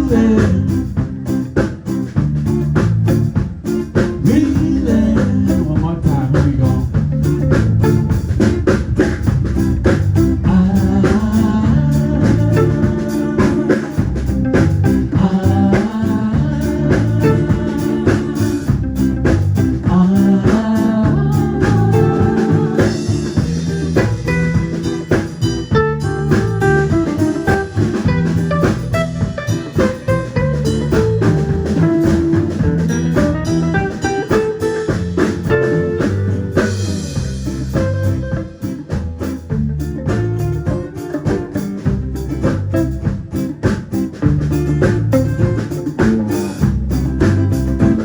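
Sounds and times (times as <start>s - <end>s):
person singing: 0.0s - 0.9s, 4.2s - 7.0s, 10.4s - 19.0s, 19.8s - 23.5s, 25.8s - 27.8s
band playing bluesy music: 0.0s - 48.0s.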